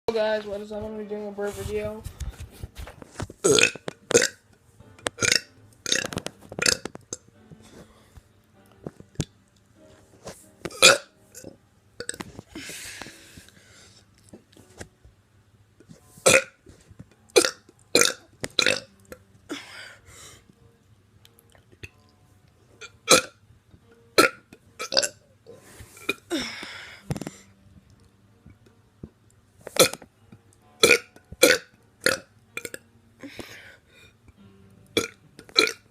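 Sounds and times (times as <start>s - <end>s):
person burping: 3.4s - 4.4s, 5.2s - 6.9s, 10.7s - 12.2s, 17.4s - 18.9s, 22.8s - 23.3s, 30.8s - 32.8s, 35.0s - 35.8s.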